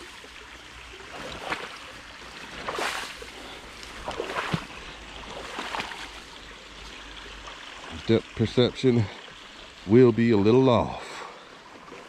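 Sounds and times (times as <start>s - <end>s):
legs sloshing through water: 0.0s - 8.1s
stream flowing: 0.0s - 12.0s.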